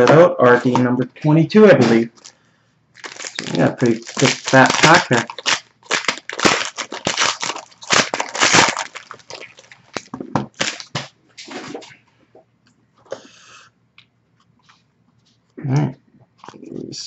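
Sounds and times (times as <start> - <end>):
packaging crinkling and rustling: 1.8 - 2.4, 3.0 - 11.9.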